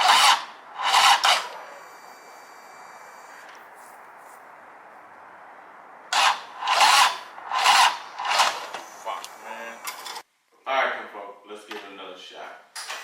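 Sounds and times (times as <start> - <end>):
motorcycle starter cranking engine: 0.0 - 2.2, 6.1 - 8.9.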